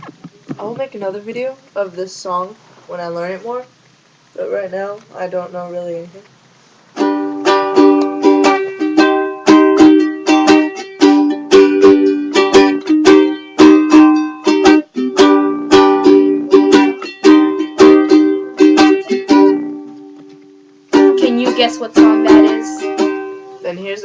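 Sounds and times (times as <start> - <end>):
ukulele strumming: 0.0 - 1.4, 7.0 - 24.0.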